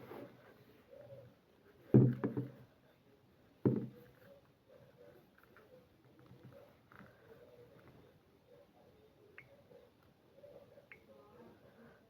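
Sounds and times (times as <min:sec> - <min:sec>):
faint background noise: 0:00.0 - 0:12.0
dull thumps: 0:01.9 - 0:02.6, 0:03.6 - 0:04.0.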